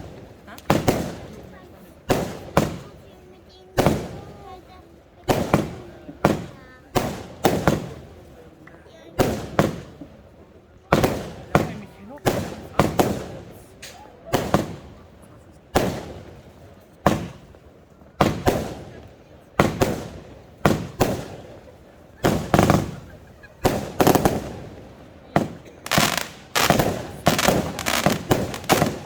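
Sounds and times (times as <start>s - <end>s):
fireworks bangs: 0.0s - 29.0s.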